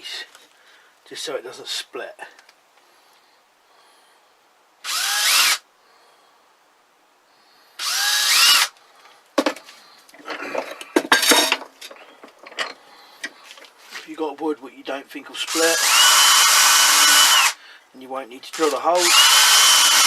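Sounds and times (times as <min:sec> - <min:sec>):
power drill boring into wood: 0:04.8 - 0:05.6, 0:07.8 - 0:08.7, 0:15.5 - 0:17.6, 0:18.5 - 0:20.0.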